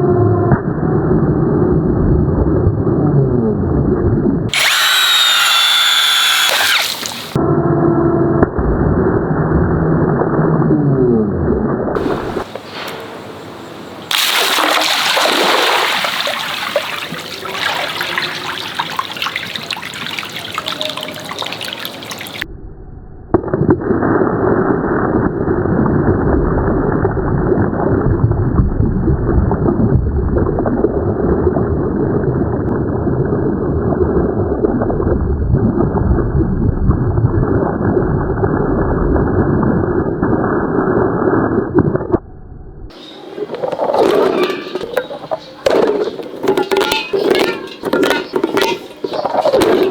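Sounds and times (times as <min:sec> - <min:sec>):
water running and gurgling: 0:04.5 - 0:07.4, 0:14.1 - 0:22.4.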